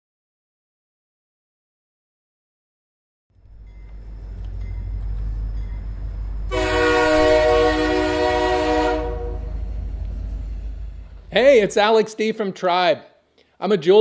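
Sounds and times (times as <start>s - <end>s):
train rumbling: 3.4s - 12.0s
train horn blast: 5.4s - 11.7s.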